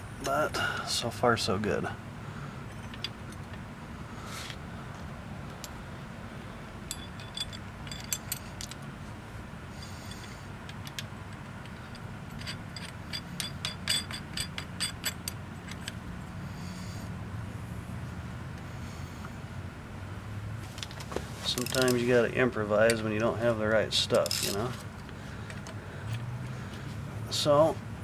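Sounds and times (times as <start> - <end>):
steady low hum: 0.0 - 28.0
metallic tool clicks and clinks: 10.1 - 16.0, 24.2 - 24.7.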